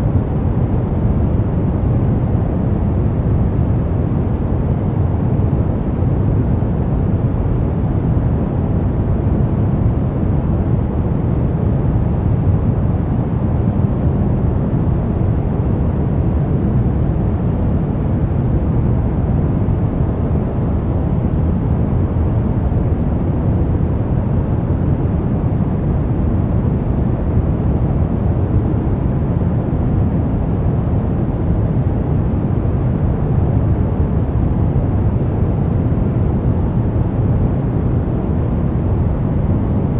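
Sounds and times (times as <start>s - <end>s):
brown noise: 0.0s - 39.9s.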